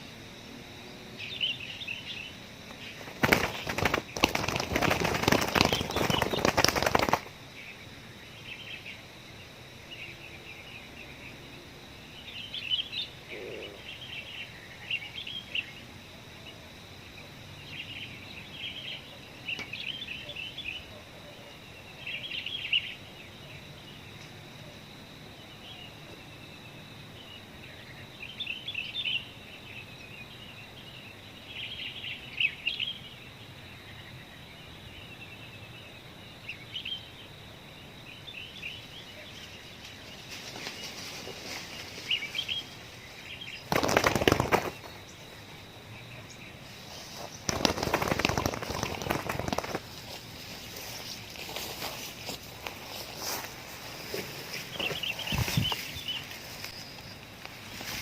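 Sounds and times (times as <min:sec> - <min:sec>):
faint steady high whine: 0:00.0 - 0:58.0
small birds chirping: 0:00.0 - 0:58.0
loud rustling: 0:03.0 - 0:07.3.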